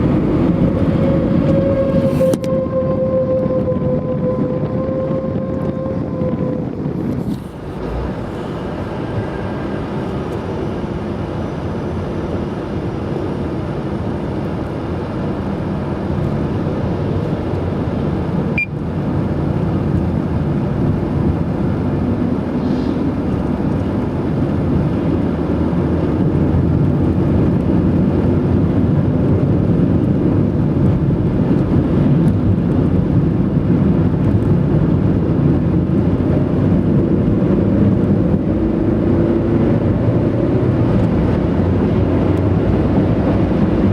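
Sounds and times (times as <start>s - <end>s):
road noise: 0.0s - 43.9s
tyres whistling on road: 0.8s - 6.9s, 18.5s - 18.8s.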